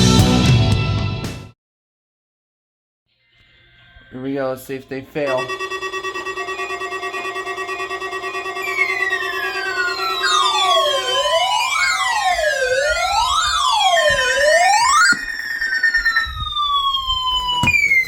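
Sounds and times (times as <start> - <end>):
electronic tones gliding down: 3.5 - 18.0
steady low tone: 4.9 - 17.5
electronic siren wail: 5.2 - 18.0.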